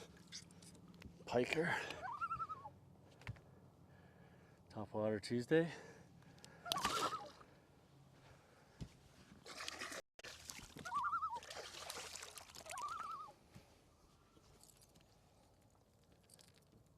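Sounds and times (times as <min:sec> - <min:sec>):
short warbling calls: 0:01.9 - 0:02.8, 0:06.6 - 0:07.4, 0:10.8 - 0:11.5, 0:12.6 - 0:13.4
water splashing and trickling: 0:06.7 - 0:07.4, 0:09.4 - 0:13.3.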